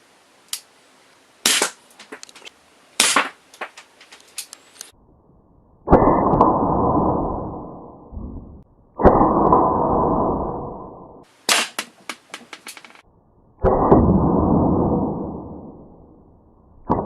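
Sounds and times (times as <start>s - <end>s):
airsoft pistol shots: 1.4s - 1.8s, 3.0s - 3.7s, 11.5s - 12.1s.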